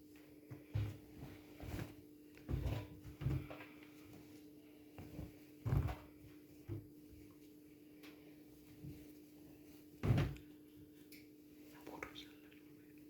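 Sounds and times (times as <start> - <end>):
washing machine thuds and knocks: 10.0 - 10.4.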